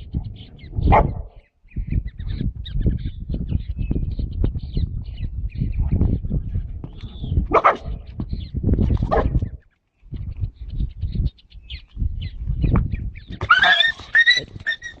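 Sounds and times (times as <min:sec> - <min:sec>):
dog yelping and barking: 0:07.5 - 0:07.9, 0:09.1 - 0:09.4, 0:13.4 - 0:15.0.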